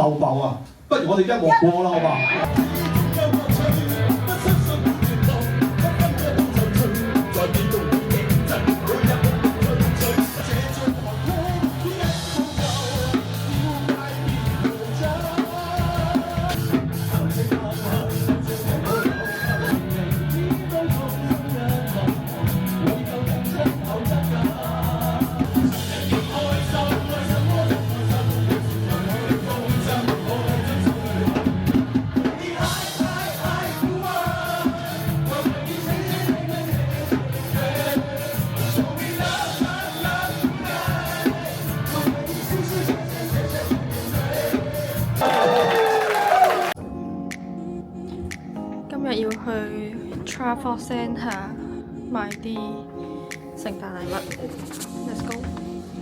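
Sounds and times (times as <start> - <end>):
live band playing pop: 2.2 - 46.8
drum kit beat: 2.4 - 46.8.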